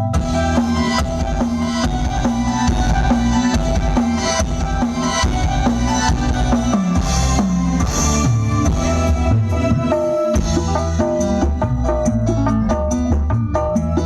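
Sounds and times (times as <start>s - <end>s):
loud music with drums and bass: 0.0s - 14.0s.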